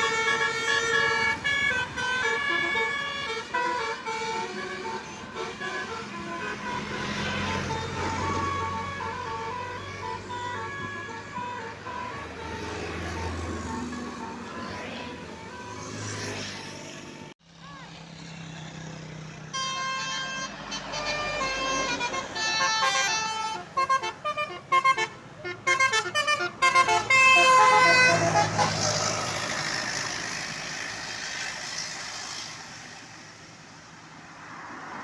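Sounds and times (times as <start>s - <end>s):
multi-tone air horn melody: 0.0s - 17.3s, 19.4s - 30.0s.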